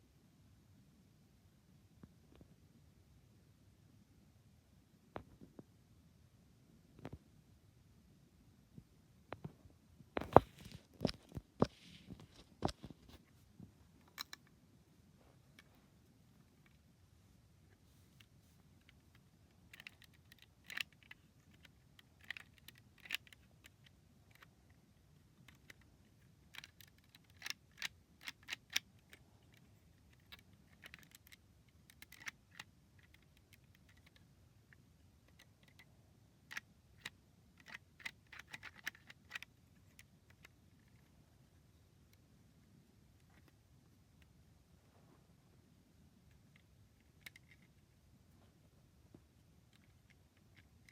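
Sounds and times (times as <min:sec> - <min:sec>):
plastic pieces clicking: 0:18.8 - 0:24.5, 0:25.4 - 0:34.2, 0:36.5 - 0:41.0.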